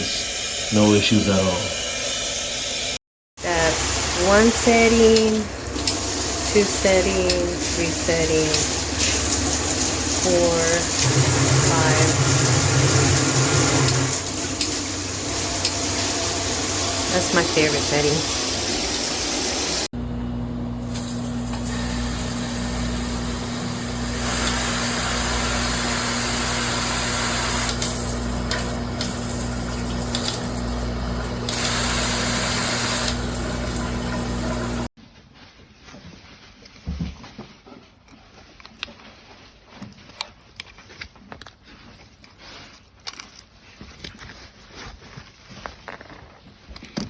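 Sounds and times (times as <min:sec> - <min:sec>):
shower head spraying water: 0:00.0 - 0:19.9, 0:20.9 - 0:34.9
low hum: 0:10.8 - 0:17.2.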